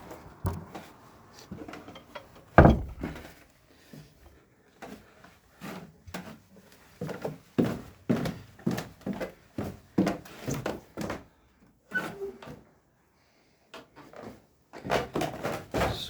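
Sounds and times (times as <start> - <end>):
footsteps thudding: 2.6 - 3.3.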